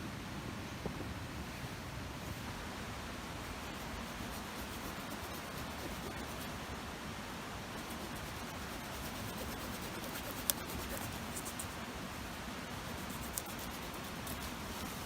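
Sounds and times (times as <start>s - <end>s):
steady hiss: 0.0s - 15.0s
building material scratching: 3.5s - 6.6s, 7.8s - 15.0s.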